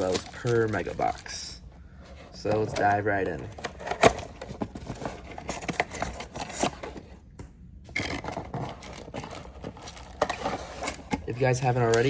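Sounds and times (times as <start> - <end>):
cardboard and wrapping tearing: 4.9 - 6.9, 7.9 - 12.0.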